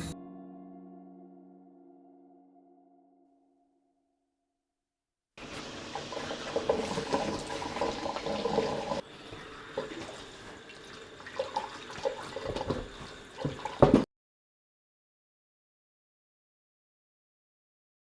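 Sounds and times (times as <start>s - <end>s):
running water splashing: 5.4s - 14.1s
knocks: 13.5s - 14.1s.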